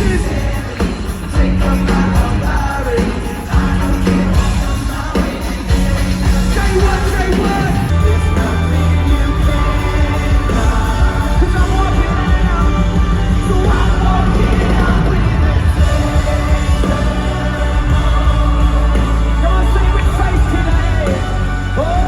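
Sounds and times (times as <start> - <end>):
person singing: 0.0 - 22.0
sustained bass notes: 5.7 - 22.0.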